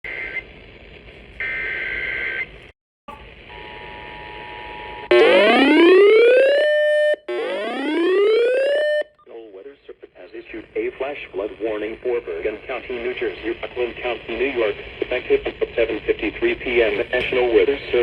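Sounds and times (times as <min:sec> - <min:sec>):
loud rising electronic alert tone: 0:05.1 - 0:09.1.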